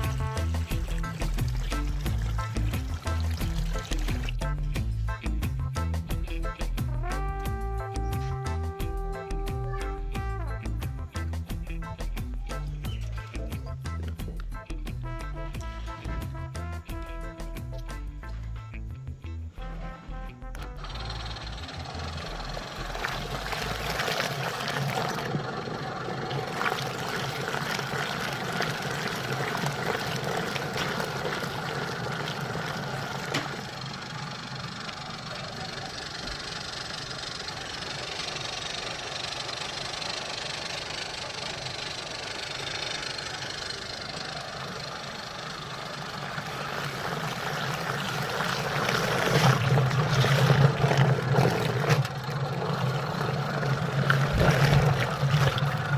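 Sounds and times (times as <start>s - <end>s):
water churning in a tub: 0.0s - 4.4s, 20.8s - 55.9s
washing machine motor humming: 0.0s - 4.5s, 20.6s - 55.9s.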